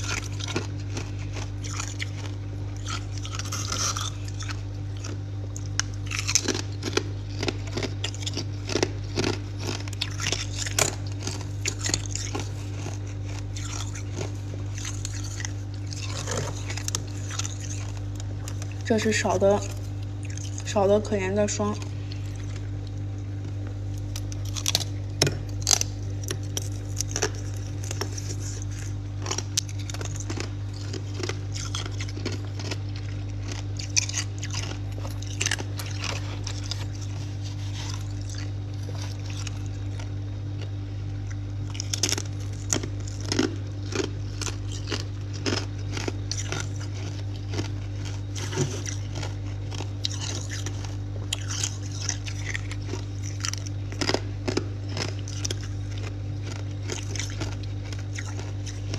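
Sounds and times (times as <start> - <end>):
ice crunching being chewed: 0.0 - 58.9.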